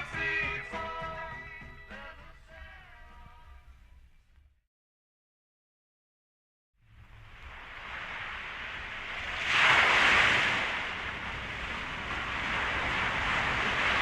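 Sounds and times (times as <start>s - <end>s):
rushing wind-like noise: 6.8s - 14.0s.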